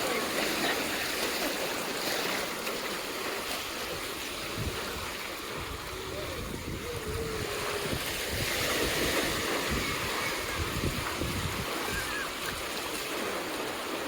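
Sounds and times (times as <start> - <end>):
waves washing onto beach: 0.0 - 14.0.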